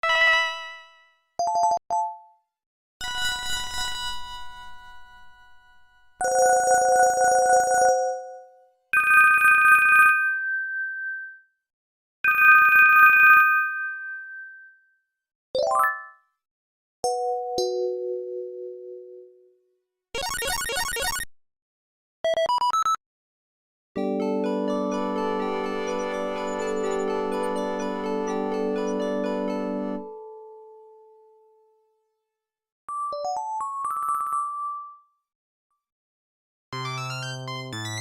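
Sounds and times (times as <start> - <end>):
phone ringtones and alert tones: 20.2 - 21.3.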